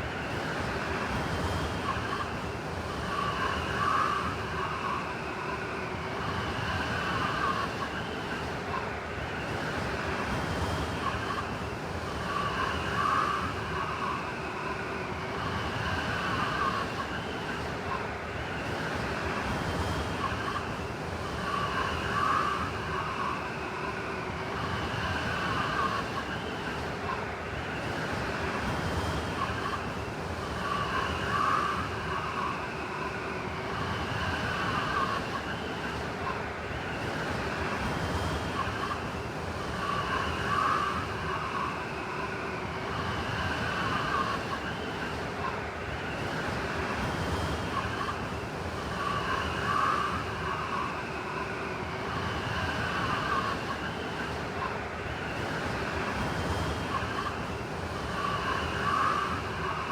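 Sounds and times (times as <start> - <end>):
blizzard wind rushing: 0.0 - 59.9
high wavering wind whistle: 28.9 - 59.9.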